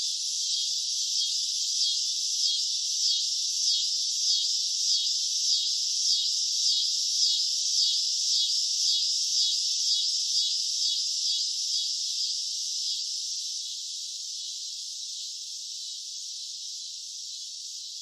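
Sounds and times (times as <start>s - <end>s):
cicadas buzzing: 9.9s - 18.0s.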